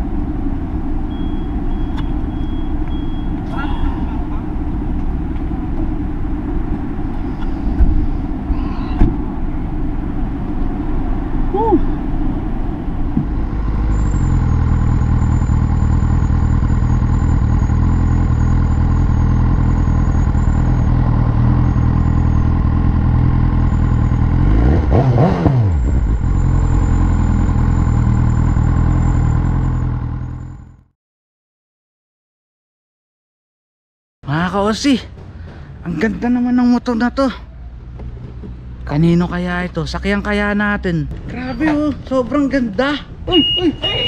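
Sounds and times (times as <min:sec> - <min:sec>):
motorcycle engine at cruising speed: 0:12.3 - 0:30.9.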